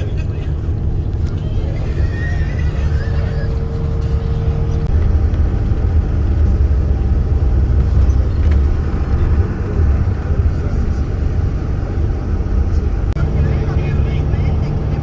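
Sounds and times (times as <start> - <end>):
bus engine and road rumble: 0.0 - 15.0.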